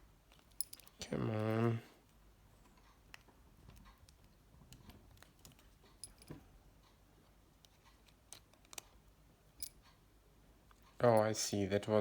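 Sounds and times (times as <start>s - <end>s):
plastic parts clicking: 7.6s - 9.0s.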